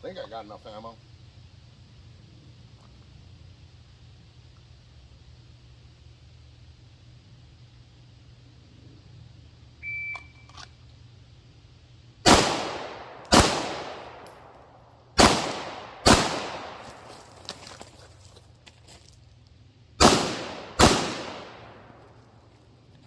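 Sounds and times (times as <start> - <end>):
shot timer beep: 9.8 - 10.5
pistol gunshots: 12.2 - 14.5, 15.2 - 17.0, 20.0 - 22.0.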